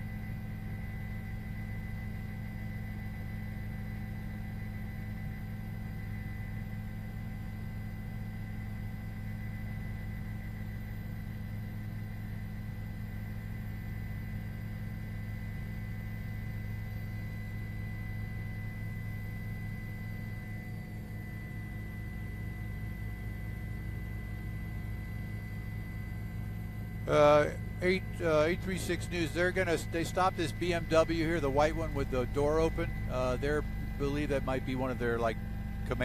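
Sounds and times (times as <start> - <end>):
faint high-pitched whines: 0.0 - 36.0
steady low hum: 0.0 - 36.0.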